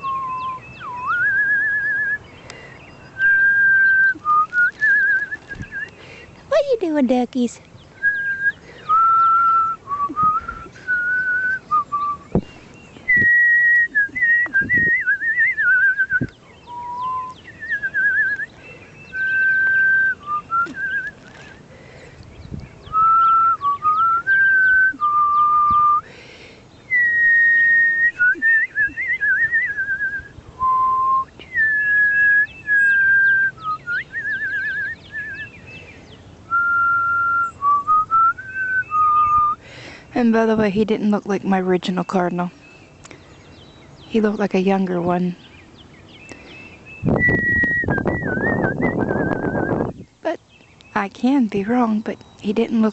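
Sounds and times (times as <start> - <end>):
woman whistling trills: 0.0 - 2.2, 3.2 - 6.0, 8.0 - 12.3, 13.1 - 18.5, 19.1 - 21.3, 22.9 - 26.1, 26.9 - 35.5, 36.5 - 39.6, 47.0 - 49.9.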